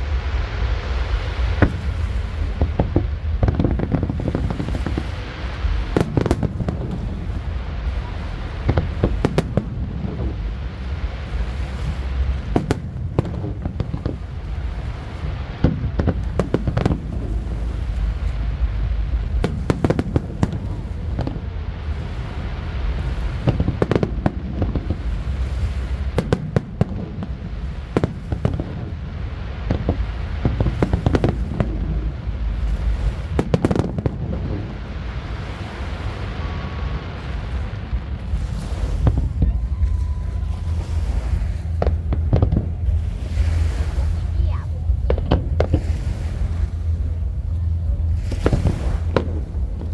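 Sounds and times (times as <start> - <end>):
fireworks bursting and crackling: 0.0 - 49.9
low rumble: 0.0 - 49.9.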